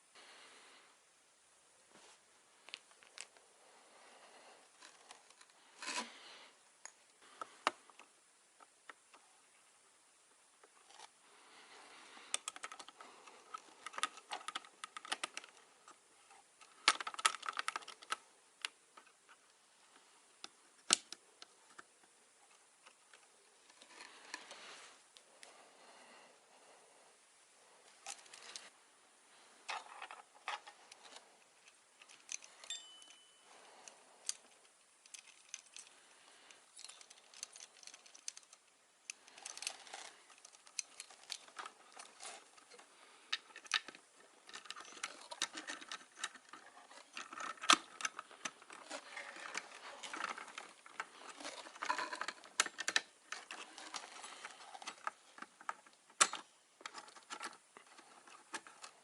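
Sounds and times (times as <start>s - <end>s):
rustling: 10.6s - 59.0s.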